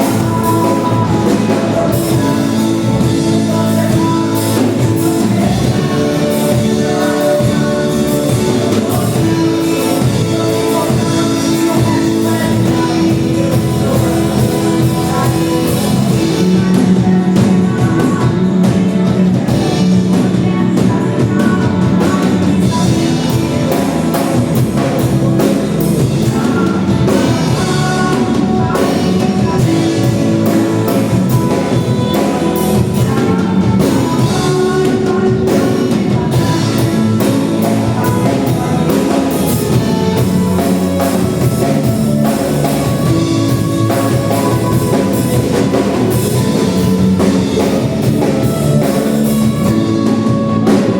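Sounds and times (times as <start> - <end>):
drum kit: 0.0 - 50.9
guitar: 0.0 - 50.9
person singing: 0.0 - 50.9
worship band playing: 0.0 - 50.9.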